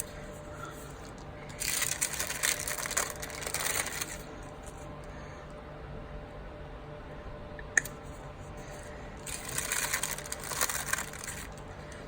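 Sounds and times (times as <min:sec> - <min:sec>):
crackly paper rustle: 0:00.0 - 0:04.8, 0:08.6 - 0:12.0.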